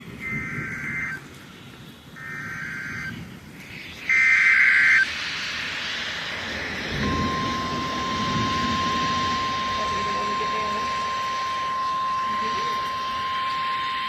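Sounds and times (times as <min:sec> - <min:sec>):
hiss: 0:00.0 - 0:14.0
warbling digital tone bursts: 0:02.2 - 0:14.0
steady single-pitch alert tone: 0:04.1 - 0:05.1, 0:06.4 - 0:14.0.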